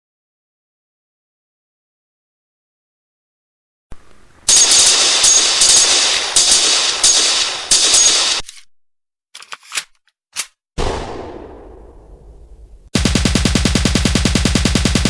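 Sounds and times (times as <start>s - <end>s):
sharp bang: 10.8s - 13.1s.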